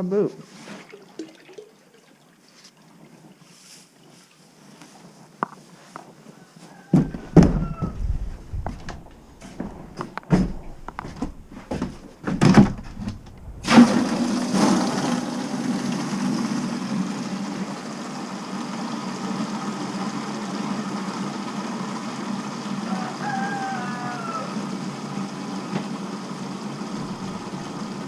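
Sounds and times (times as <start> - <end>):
knocks and thumps: 6.9 - 13.8
steady machine hum: 7.2 - 22.9, 24.6 - 28.0.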